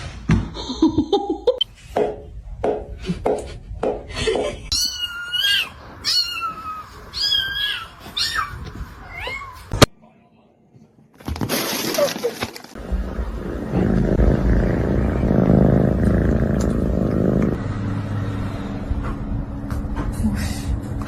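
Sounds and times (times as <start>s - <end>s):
cat meowing: 4.7s - 9.7s.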